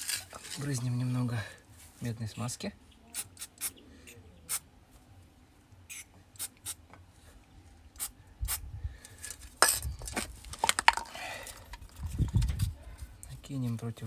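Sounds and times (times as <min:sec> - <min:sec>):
metal parts clinking: 0:09.0 - 0:11.1.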